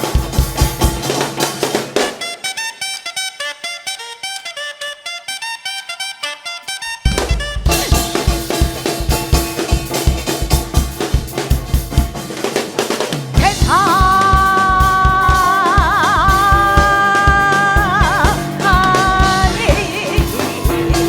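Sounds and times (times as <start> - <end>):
drum kit and band playing: 0.0 - 2.6, 7.0 - 21.0
person singing with vibrato: 13.4 - 21.0
picked string melody: 13.4 - 21.0.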